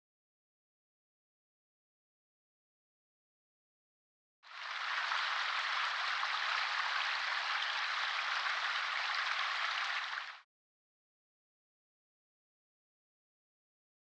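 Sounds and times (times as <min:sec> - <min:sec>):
rain-like hiss: 0:04.5 - 0:10.4.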